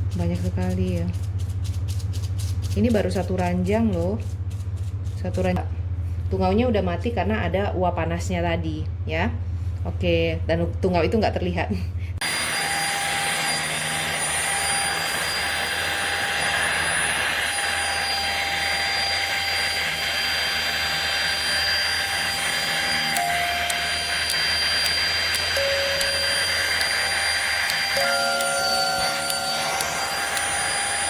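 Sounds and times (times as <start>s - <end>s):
handheld vacuum cleaner running: 12.2s - 31.0s.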